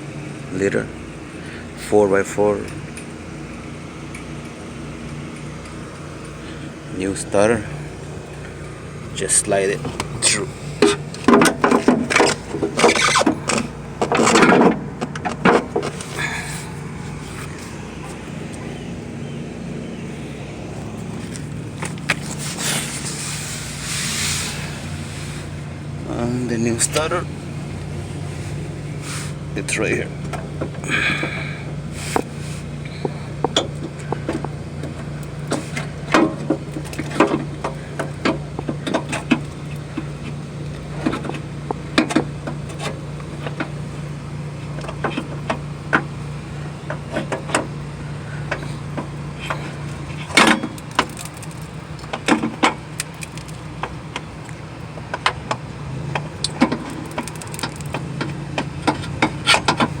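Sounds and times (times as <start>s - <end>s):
steady low hum: 0.0s - 60.0s
metallic clunks and knocks: 10.8s - 16.1s.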